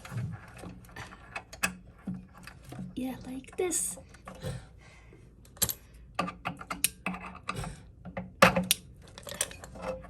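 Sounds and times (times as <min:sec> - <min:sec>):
refrigerator parts clicking and knocking: 0:05.5 - 0:10.0.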